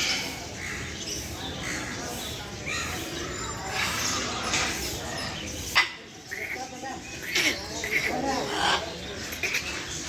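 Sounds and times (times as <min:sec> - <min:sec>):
birds squawking and chirping: 0:00.0 - 0:10.0
indistinct voices: 0:00.0 - 0:10.0.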